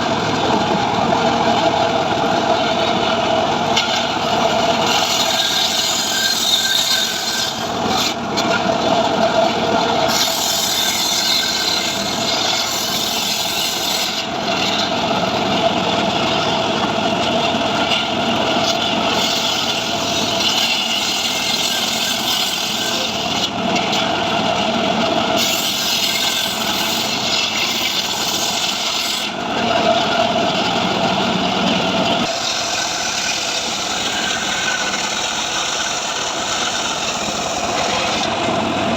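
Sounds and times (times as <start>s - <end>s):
engine-driven saw cutting wood: 0.0s - 38.9s.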